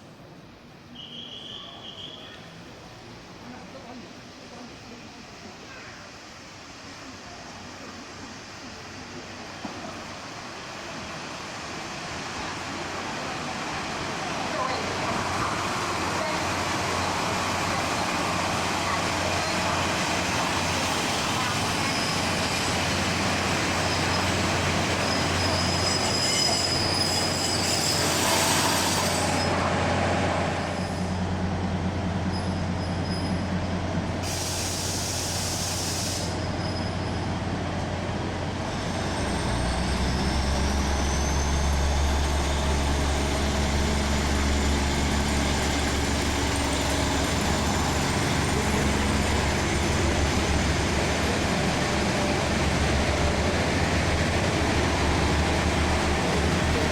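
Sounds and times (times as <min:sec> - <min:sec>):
train low hum: 0:00.0 - 0:56.9
train rumble with rising whine: 0:02.6 - 0:56.9
hissing air bursts: 0:34.2 - 0:36.5.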